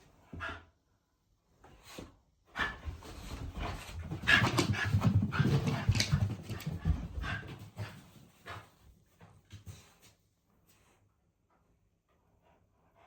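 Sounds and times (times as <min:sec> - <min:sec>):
dog panting rapidly: 0:02.6 - 0:08.8.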